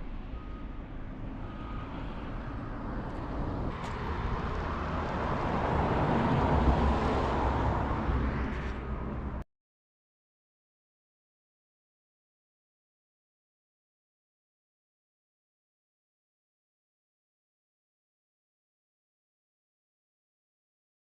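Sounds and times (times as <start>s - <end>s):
road noise: 0.0s - 9.4s.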